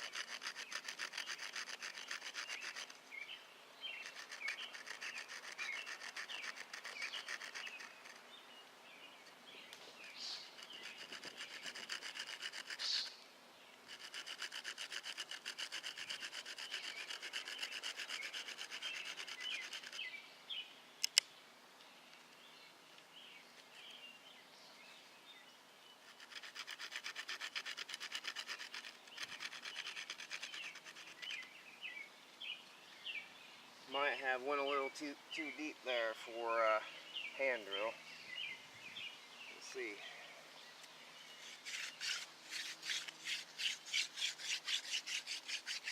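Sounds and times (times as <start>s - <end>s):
wooden spindle rasping on wood: 0.0s - 3.0s, 4.0s - 8.2s, 10.4s - 13.1s, 13.8s - 20.1s, 26.1s - 31.5s, 41.4s - 45.9s
birds chirping: 0.0s - 45.9s
sharp clicks: 21.0s - 21.3s.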